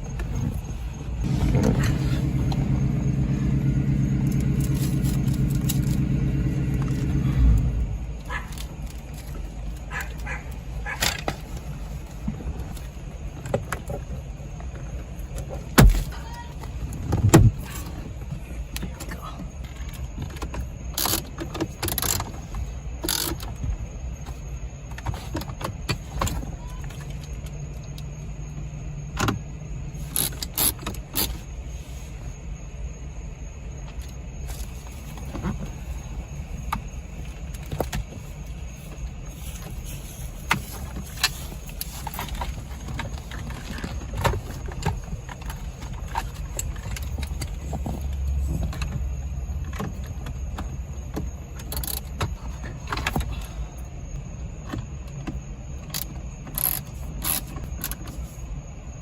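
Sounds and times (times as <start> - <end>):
steady low rumble: 0.0 - 10.9
tools and small parts clicking: 19.7 - 23.6, 30.0 - 31.4, 55.8 - 58.2.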